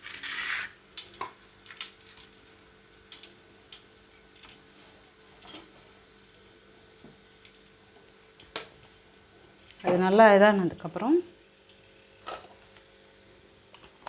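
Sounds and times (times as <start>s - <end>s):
spices crackling in hot oil: 0.0s - 10.1s, 10.8s - 14.0s.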